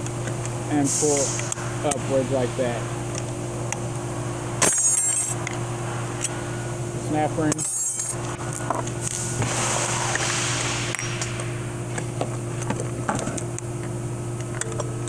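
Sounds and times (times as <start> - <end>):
steady low hum: 0.0 - 15.0
metal parts clicking and rustling: 4.6 - 5.6, 7.5 - 9.2.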